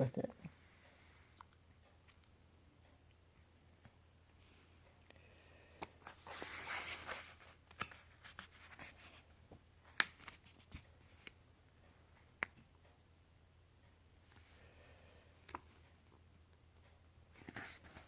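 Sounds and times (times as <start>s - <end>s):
paper pages rustling: 6.0s - 9.2s.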